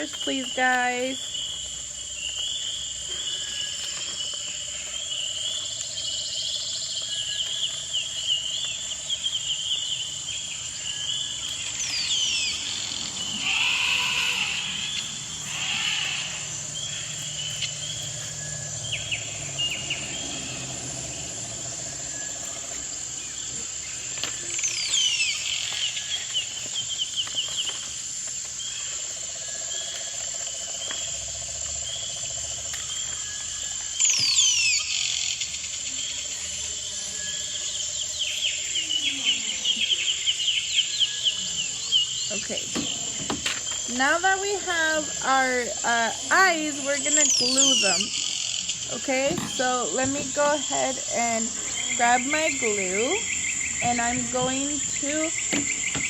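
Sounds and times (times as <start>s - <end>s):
crickets chirping: 0.0s - 56.0s
constant high whine: 39.6s - 56.0s
falling whistle-like calls: 43.8s - 51.2s.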